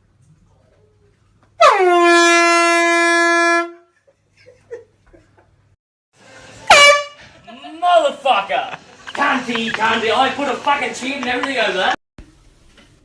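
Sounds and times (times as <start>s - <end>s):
air horn blast: 1.6s - 3.9s, 6.4s - 7.5s.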